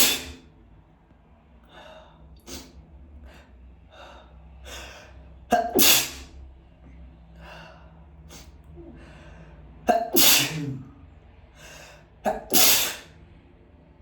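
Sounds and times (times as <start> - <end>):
person sneezing loudly: 0.0 - 0.4, 5.5 - 6.3, 9.9 - 10.9, 12.3 - 13.1.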